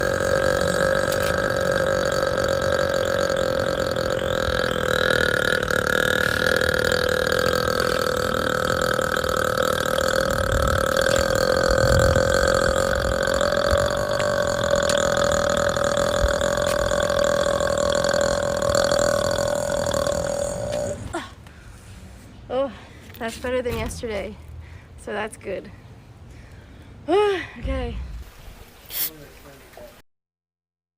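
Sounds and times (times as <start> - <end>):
woman burping: 0.0 - 21.4.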